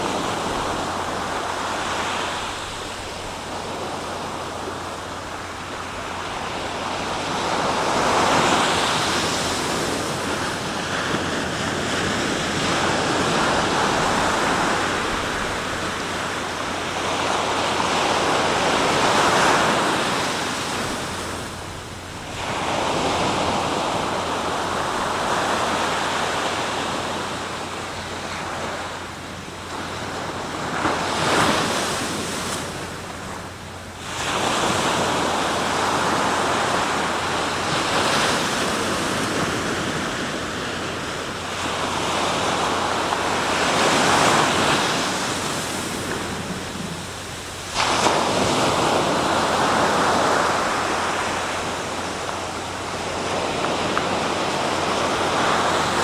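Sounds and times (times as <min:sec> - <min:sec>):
sea waves breaking: 0:00.0 - 0:56.0.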